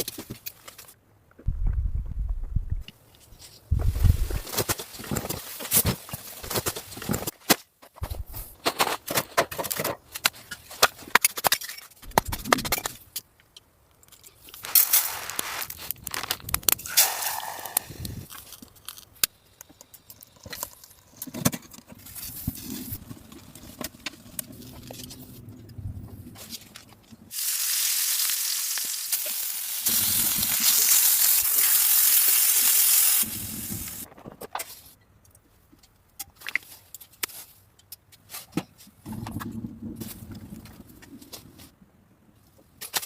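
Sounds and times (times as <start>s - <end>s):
food sizzling in a pan: 27.3s - 34.1s.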